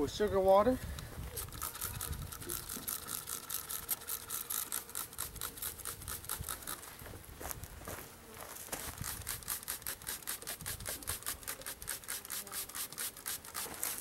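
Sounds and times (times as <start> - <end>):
rapid scratching strokes: 1.4 - 6.9, 8.7 - 14.0.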